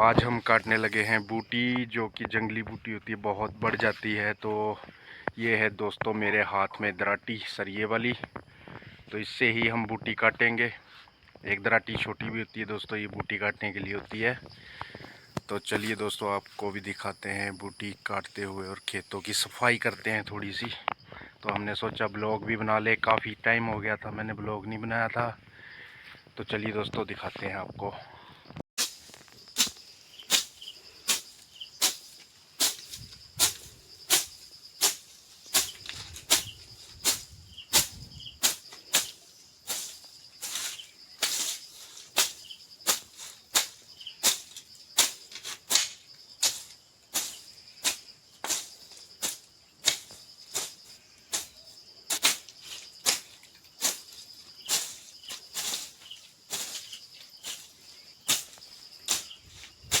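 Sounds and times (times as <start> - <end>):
high insect drone: 0.0 - 23.0, 28.4 - 60.0
sickle swishing through weeds: 28.8 - 60.0.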